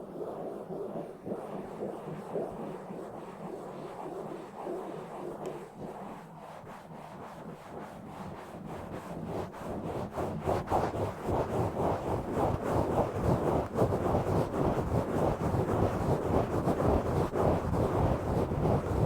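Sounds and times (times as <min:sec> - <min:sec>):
scratching on microphone: 0:03.8 - 0:19.0.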